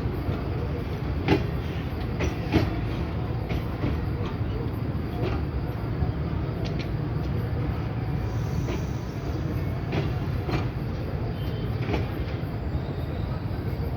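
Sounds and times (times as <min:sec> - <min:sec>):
wheels clacking over rail joints: 0:00.0 - 0:05.5
train rumbling past: 0:00.0 - 0:13.9.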